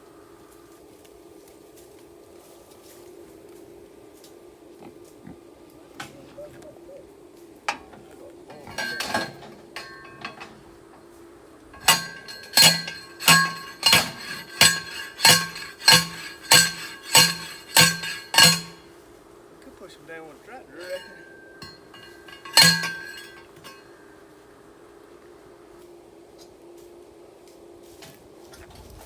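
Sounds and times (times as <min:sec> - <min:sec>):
ringing metal clangs of post driver: 0:07.7 - 0:10.7, 0:11.8 - 0:18.9, 0:20.8 - 0:24.0
light metal clatter: 0:07.7 - 0:18.9, 0:20.7 - 0:24.2.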